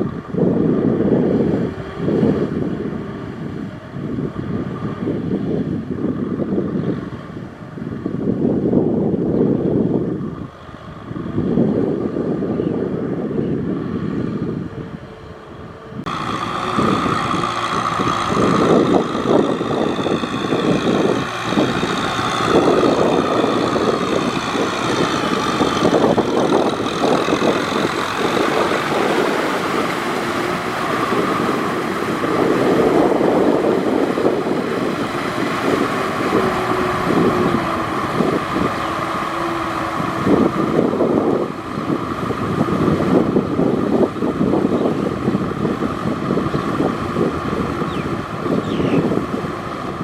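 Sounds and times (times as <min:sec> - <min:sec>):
tractor engine under load: 0:15.0 - 0:50.0.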